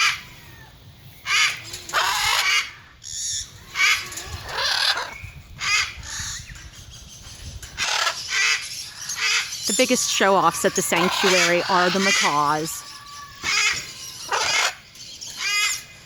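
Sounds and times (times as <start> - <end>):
macaws squawking: 7.8 - 15.9.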